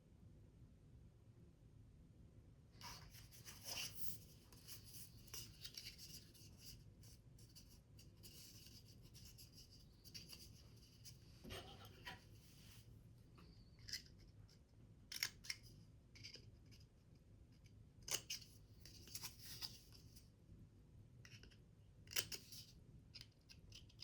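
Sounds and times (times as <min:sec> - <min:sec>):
paper scratching and rustling: 0:02.8 - 0:12.9.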